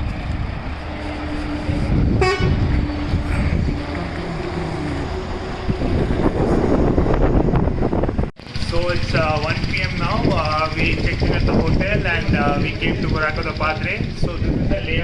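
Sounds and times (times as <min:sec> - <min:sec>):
vehicle engine rumble: 0:00.0 - 0:15.0
horn toot: 0:02.1 - 0:05.5.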